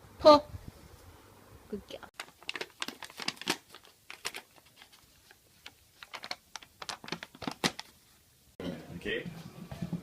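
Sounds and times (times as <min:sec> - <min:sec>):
crinkling and crackling: 0:02.1 - 0:08.2.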